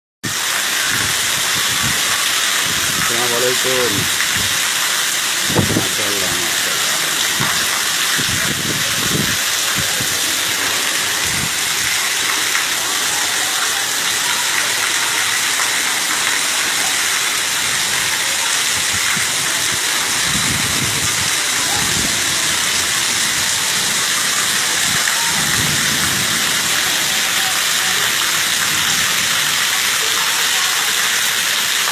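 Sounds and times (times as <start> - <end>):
heavy rain pouring: 0.2 - 31.9
faint voices: 0.7 - 31.9.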